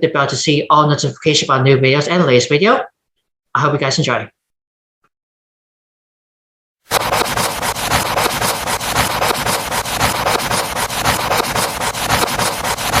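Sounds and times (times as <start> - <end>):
scratchy rubbing with crackles: 6.9 - 13.0.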